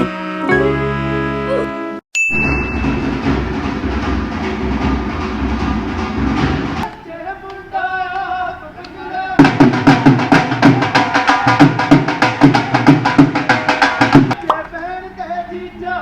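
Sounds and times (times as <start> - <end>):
sustained melody notes: 0.0 - 6.8
driving drum beat: 2.3 - 7.0, 9.4 - 14.7
dense noisy music: 2.4 - 6.8.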